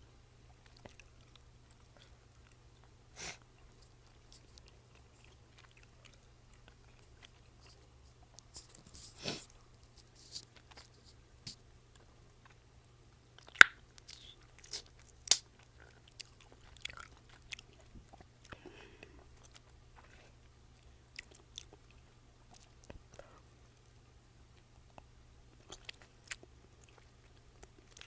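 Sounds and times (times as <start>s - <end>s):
gum chewing clicks and smacks: 0.5s - 8.9s, 10.4s - 24.0s, 24.6s - 28.0s
chewing gum snap: 13.4s - 15.5s.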